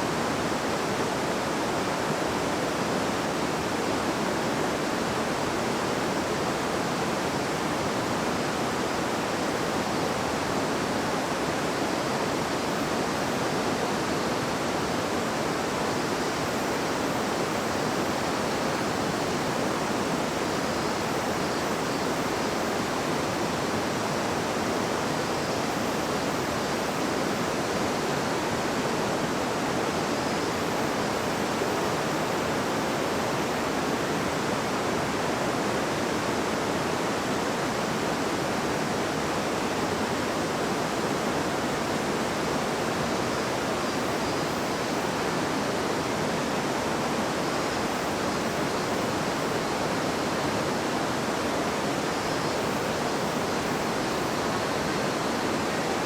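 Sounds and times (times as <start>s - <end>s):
river water rushing over stones: 0.1s - 56.0s.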